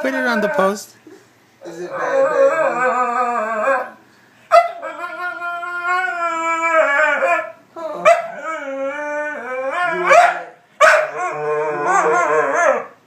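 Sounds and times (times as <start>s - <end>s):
dog whining and howling: 1.7s - 13.0s.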